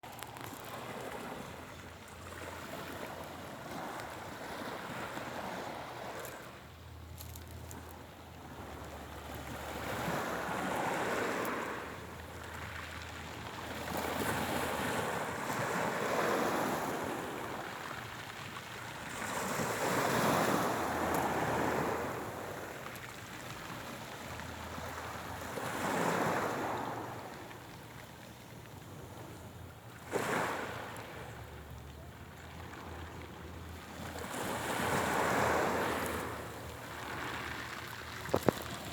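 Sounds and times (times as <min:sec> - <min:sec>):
sea waves washing in: 0:07.8 - 0:38.9.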